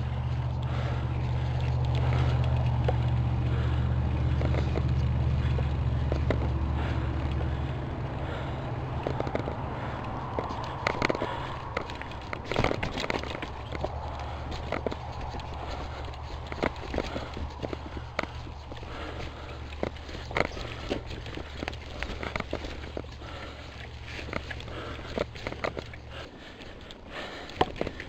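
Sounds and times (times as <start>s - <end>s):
wind rumble on microphone: 0.0s - 28.0s.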